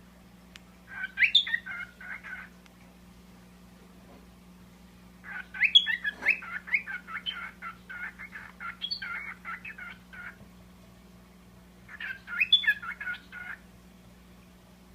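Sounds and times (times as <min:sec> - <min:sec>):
parrot chirping: 0:00.9 - 0:02.5, 0:05.2 - 0:10.4, 0:11.9 - 0:13.6.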